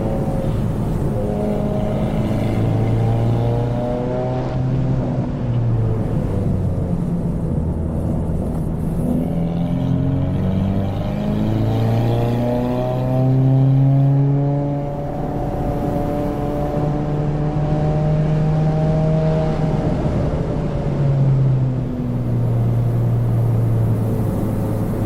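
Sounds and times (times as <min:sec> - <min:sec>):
car engine accelerating: 0:00.0 - 0:20.7.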